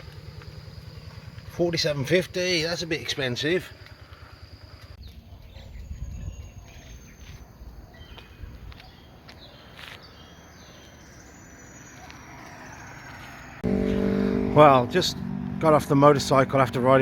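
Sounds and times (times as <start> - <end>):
high insect buzz: 0.0 - 1.5
bird chirps: 3.7 - 13.6.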